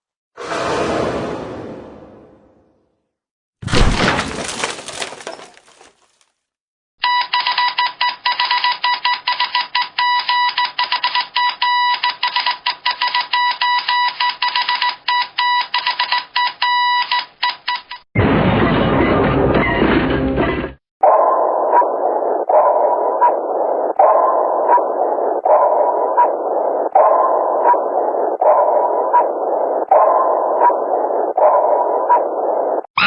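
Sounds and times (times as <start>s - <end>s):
big crash: 3.6s - 5.6s
morse code beeps: 7.0s - 18.0s.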